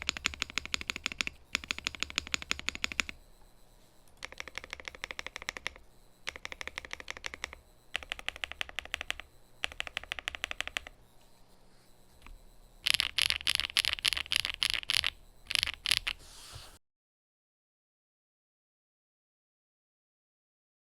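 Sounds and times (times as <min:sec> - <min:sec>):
mechanical keyboard key clicks: 0:04.2 - 0:10.9, 0:12.8 - 0:16.2.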